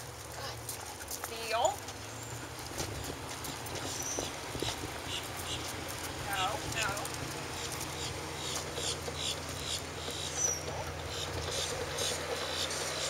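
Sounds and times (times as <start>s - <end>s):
footsteps of person and dogs: 0.0s - 13.0s.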